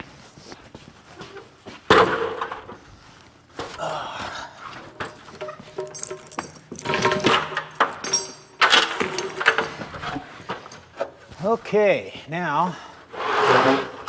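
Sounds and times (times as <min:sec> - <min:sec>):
metal pieces clinking and jangling: 0:05.0 - 0:11.0.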